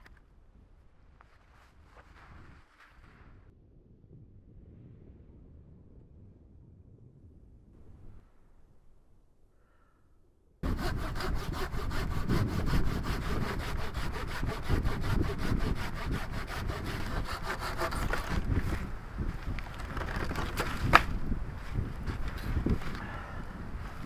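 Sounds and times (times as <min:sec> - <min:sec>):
hand saw cutting wood: 0:10.6 - 0:18.9.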